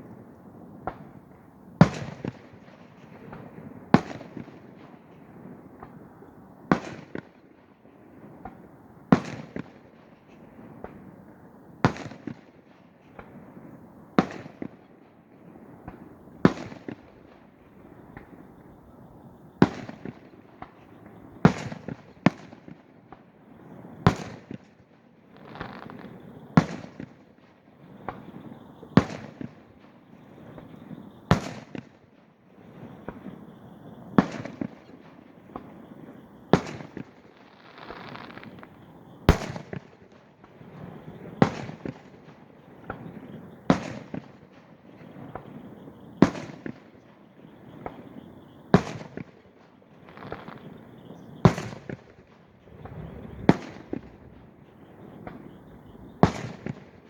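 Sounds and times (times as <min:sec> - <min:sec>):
fireworks booming: 0:50.1 - 0:57.0
low rumble and crackle: 0:50.2 - 0:57.0.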